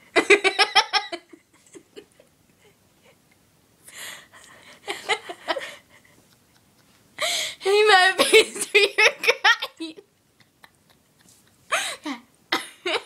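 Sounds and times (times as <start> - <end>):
noisy breath: 3.8 - 6.2, 7.2 - 7.7, 11.6 - 12.2
stifled breathy laughter: 4.3 - 7.6.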